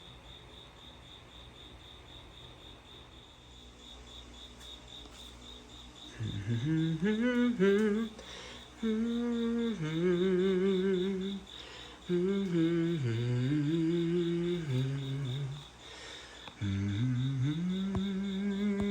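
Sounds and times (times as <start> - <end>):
crickets chirping: 0.0 - 18.9
person humming a tune: 6.1 - 15.7, 16.6 - 18.9.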